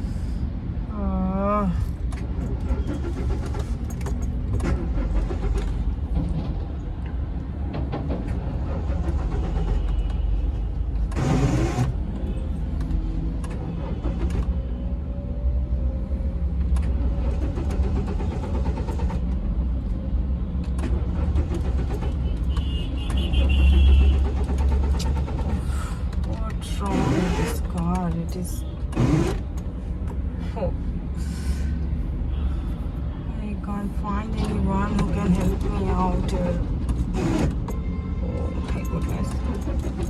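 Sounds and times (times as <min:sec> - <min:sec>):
car starter motor cranking: 0:02.0 - 0:06.1, 0:08.6 - 0:10.1, 0:16.7 - 0:19.9, 0:20.6 - 0:30.2, 0:34.5 - 0:37.7.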